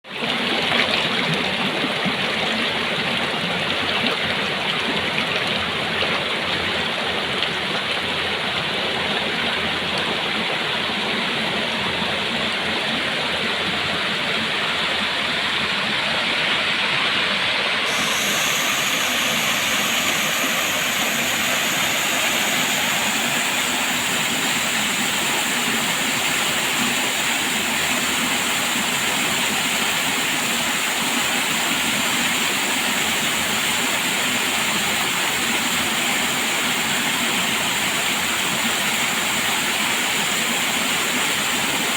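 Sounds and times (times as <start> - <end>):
waterfall rushing: 17.6 - 41.9.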